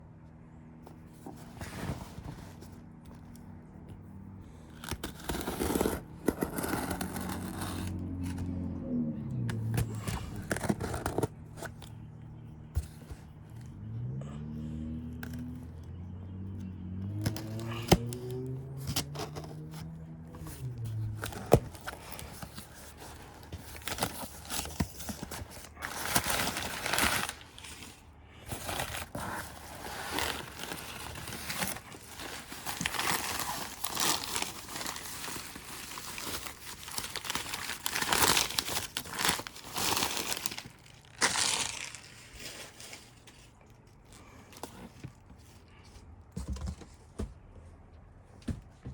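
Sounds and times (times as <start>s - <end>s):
packaging crinkling: 20.4s - 44.7s.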